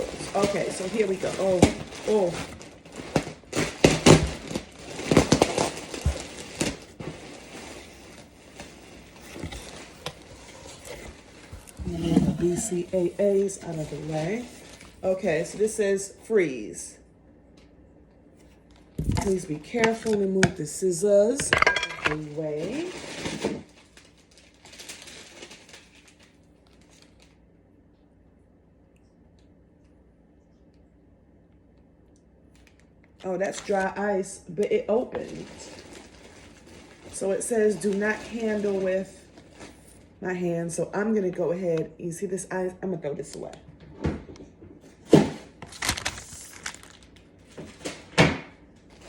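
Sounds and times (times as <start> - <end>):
packaging crinkling: 0.0 - 15.0, 21.6 - 27.4, 32.5 - 34.0, 34.7 - 40.1, 45.1 - 48.2.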